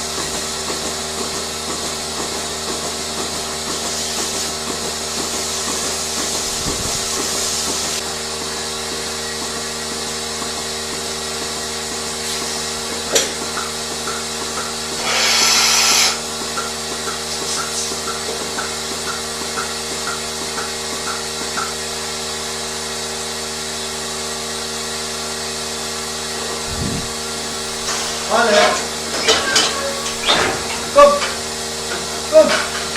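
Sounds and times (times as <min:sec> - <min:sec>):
machinery hum: 0:26.3 - 0:32.4
hissing air burst: 0:26.5 - 0:31.9
short high beeps: 0:29.2 - 0:31.2.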